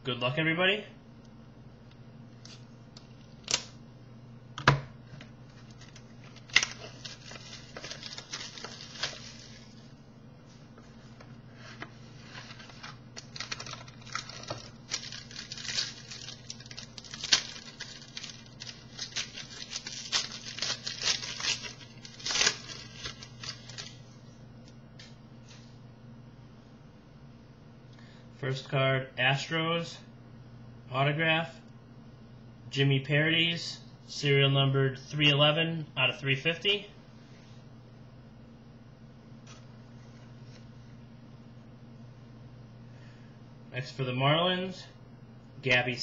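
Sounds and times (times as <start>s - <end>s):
steady low hum: 0.0s - 46.0s
wrapper tearing and crinkling: 5.6s - 9.9s, 12.4s - 24.0s.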